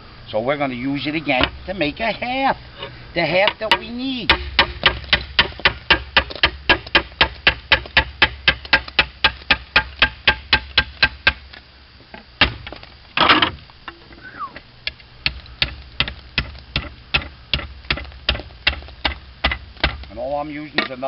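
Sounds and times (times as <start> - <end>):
hammer tapping on slate: 3.4 - 11.4, 15.2 - 20.1.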